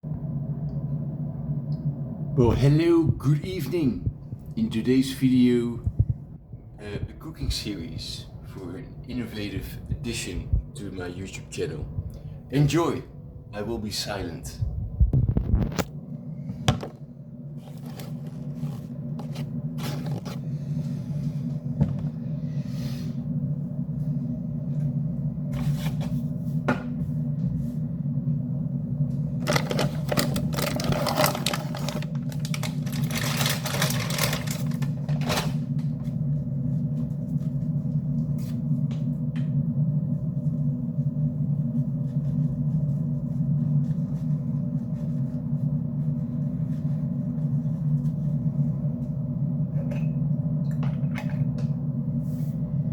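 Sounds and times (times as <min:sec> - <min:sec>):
steady low hum: 0:00.0 - 0:52.9
rustling noise: 0:14.6 - 0:15.9, 0:17.6 - 0:22.2.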